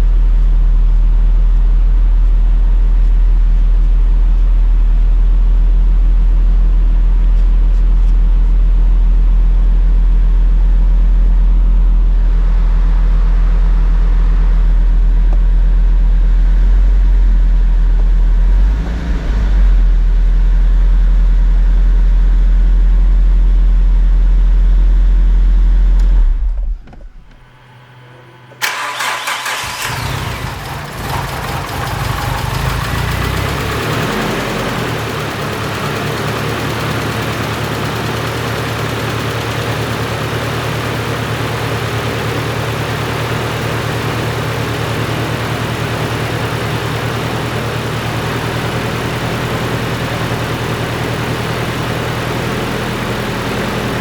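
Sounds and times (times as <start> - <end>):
engine droning: 0.0 - 54.0
engine starting and idling: 25.9 - 54.0.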